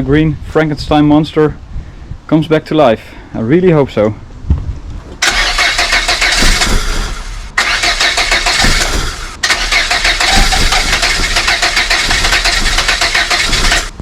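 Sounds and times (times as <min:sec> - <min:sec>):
car starter cranking engine: 0:05.2 - 0:14.0.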